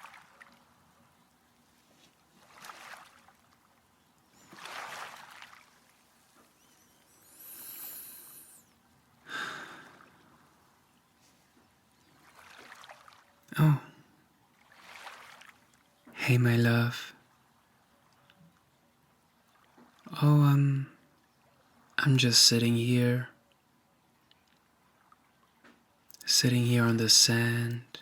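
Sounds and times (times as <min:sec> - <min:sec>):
man breathing slowly: 0:07.2 - 0:10.6.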